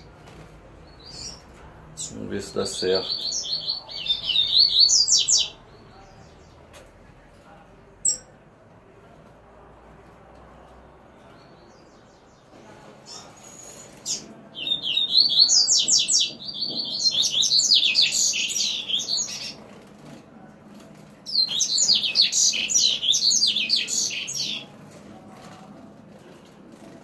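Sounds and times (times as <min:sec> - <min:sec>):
bird twittering song: 0:00.8 - 0:06.6, 0:13.1 - 0:19.7, 0:21.3 - 0:24.7.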